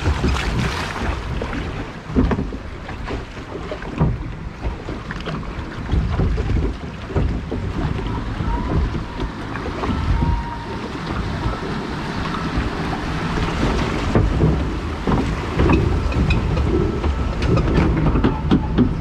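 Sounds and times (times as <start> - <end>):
boat knocking against trough: 0.0 - 19.0
running water: 0.0 - 19.0
wind buffeting microphone: 0.0 - 19.0.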